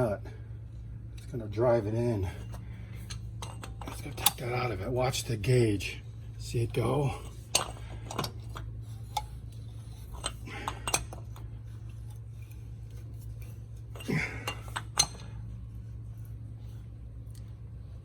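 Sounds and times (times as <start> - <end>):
steady low hum: 0.0 - 18.0
wrench clinking on metal: 2.4 - 4.6, 7.4 - 9.3, 10.0 - 11.4, 13.4 - 15.4.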